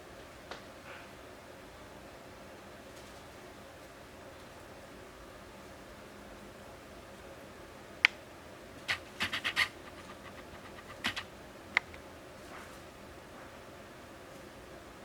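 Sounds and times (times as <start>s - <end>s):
sharp clicks and scratchy taps: 8.9s - 12.0s
faint hiss: 8.9s - 13.0s.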